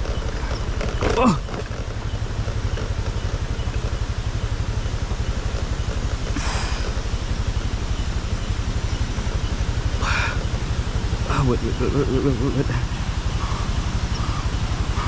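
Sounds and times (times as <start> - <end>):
motorcycle engine running: 0.0 - 15.0.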